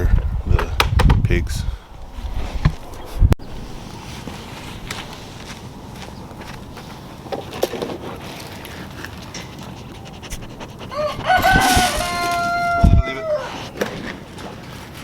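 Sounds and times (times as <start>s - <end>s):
rooster crowing: 10.9s - 13.7s.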